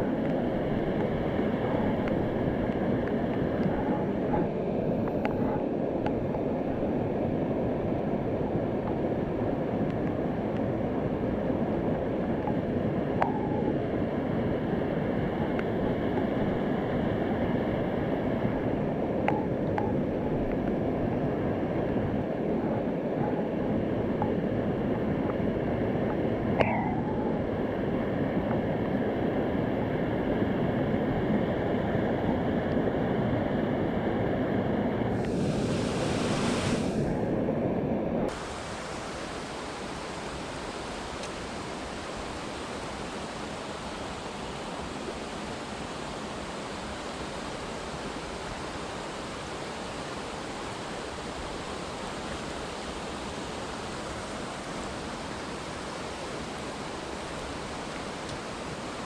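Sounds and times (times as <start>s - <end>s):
river water rushing: 0.0s - 5.7s, 26.6s - 59.0s.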